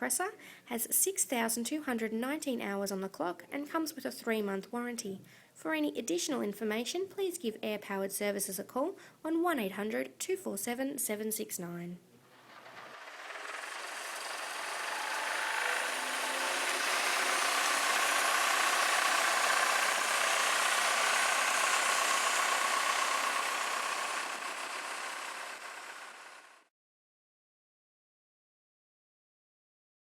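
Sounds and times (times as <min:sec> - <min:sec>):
diesel air compressor running: 0:12.3 - 0:26.7.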